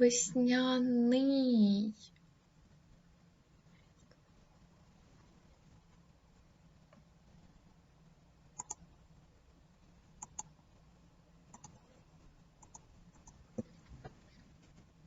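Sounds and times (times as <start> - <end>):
faint low hum: 0.0 - 15.0
computer mouse clicks: 8.6 - 8.8, 10.2 - 10.6, 11.5 - 11.9, 12.6 - 13.8.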